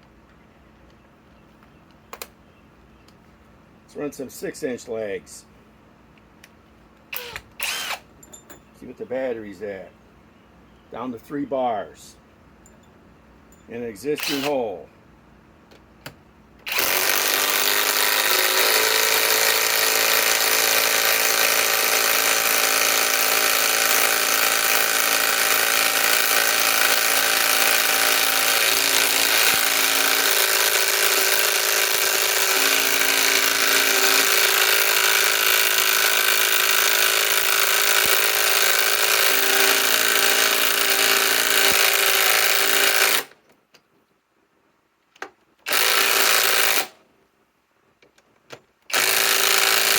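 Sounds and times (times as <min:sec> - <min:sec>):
impact wrench running: 0:07.1 - 0:08.1, 0:14.2 - 0:14.6, 0:16.7 - 0:43.3, 0:45.7 - 0:46.9, 0:48.9 - 0:49.9.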